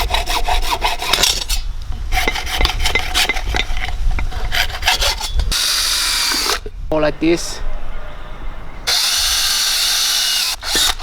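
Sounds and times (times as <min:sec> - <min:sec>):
hand tool rasping: 0:00.0 - 0:06.6
power drill whirring: 0:05.2 - 0:06.7, 0:08.9 - 0:11.0.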